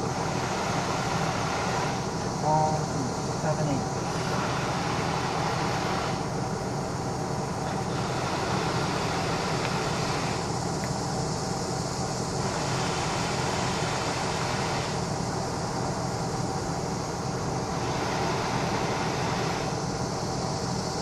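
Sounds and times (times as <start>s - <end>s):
mechanical hiss: 0.0s - 21.0s.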